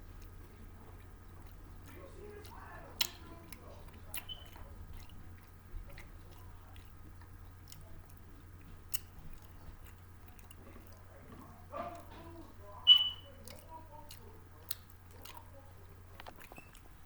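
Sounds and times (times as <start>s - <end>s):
low electrical hum: 0.0s - 17.0s
person chewing crunchy snack: 0.1s - 11.1s.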